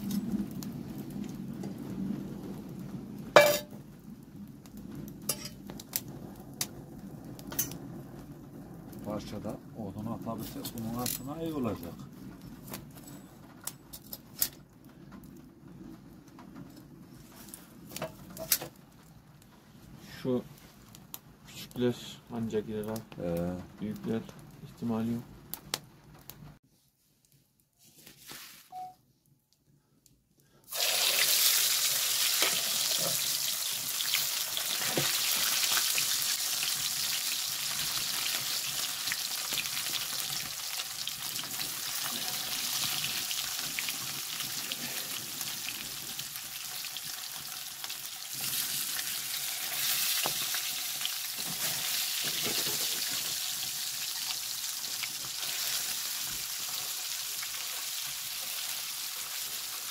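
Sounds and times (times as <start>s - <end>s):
fish sizzling on a griddle: 3.4s - 3.8s, 30.7s - 59.9s.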